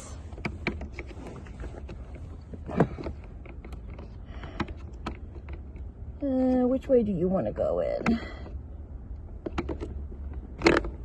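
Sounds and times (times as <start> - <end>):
low steady rumble: 0.0 - 11.0
clicks and knocks of parts handled: 0.3 - 6.0, 8.0 - 11.0.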